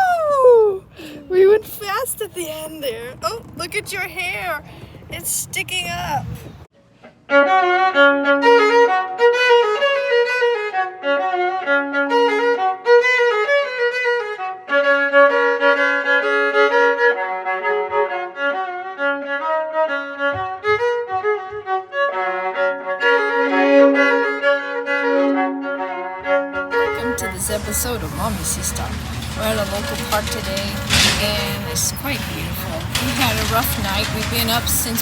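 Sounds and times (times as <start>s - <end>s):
violin melody over low drone: 7.3s - 31.2s.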